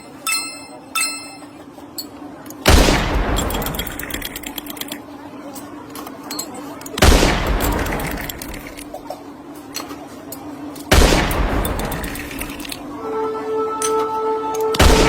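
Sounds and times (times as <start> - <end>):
steady low hum: 0.0 - 5.8, 6.8 - 9.6, 10.2 - 15.0
loud blasts: 2.7 - 4.6, 7.0 - 8.8, 10.9 - 12.9, 14.8 - 15.0.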